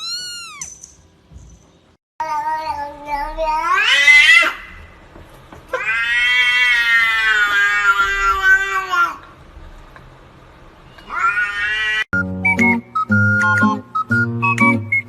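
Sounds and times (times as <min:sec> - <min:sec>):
cat meowing: 0:00.0 - 0:00.7, 0:05.7 - 0:09.2, 0:11.0 - 0:12.1.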